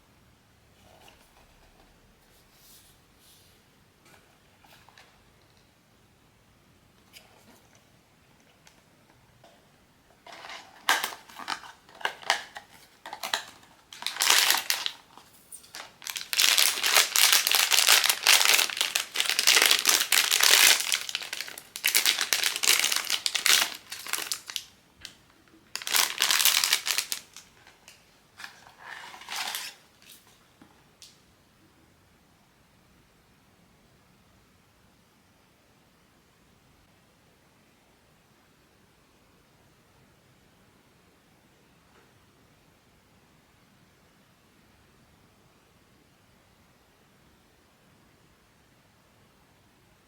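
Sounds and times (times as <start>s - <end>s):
packaging crinkling: 10.2s - 30.2s.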